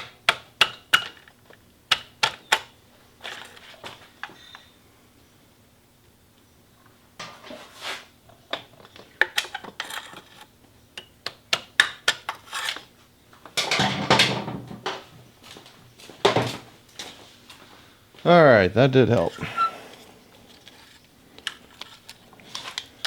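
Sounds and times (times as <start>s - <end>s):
tools clicking and tapping: 0.0s - 2.7s
scraping rub: 7.5s - 8.1s, 12.3s - 12.8s.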